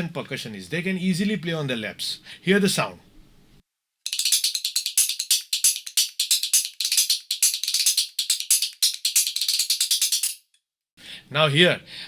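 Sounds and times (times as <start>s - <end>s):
wooden clappers clicking rhythmically: 4.1s - 10.5s.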